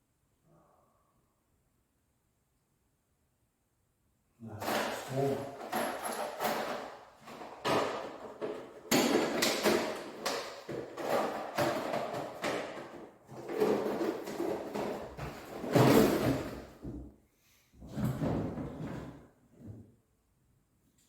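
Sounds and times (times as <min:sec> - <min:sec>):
objects knocking and clattering: 0:04.6 - 0:17.2, 0:17.8 - 0:19.3.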